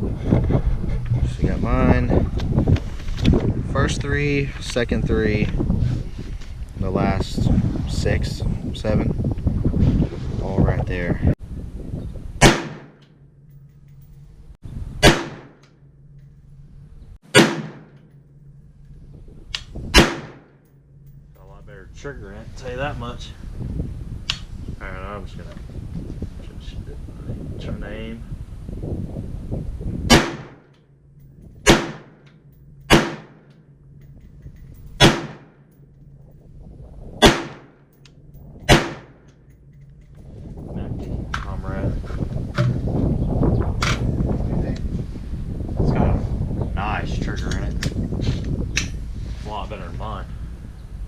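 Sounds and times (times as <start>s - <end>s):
rifle shots: 12.4s - 13.0s, 15.0s - 15.6s, 17.3s - 18.0s, 19.9s - 20.5s, 30.1s - 30.6s, 31.6s - 32.2s, 32.9s - 33.5s, 35.0s - 35.6s, 37.2s - 37.8s, 38.7s - 39.2s.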